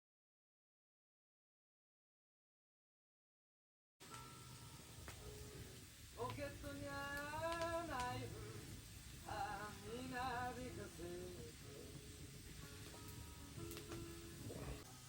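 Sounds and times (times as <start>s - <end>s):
quiet background music: 4.0s - 15.0s
wordless singing voice: 6.2s - 12.0s.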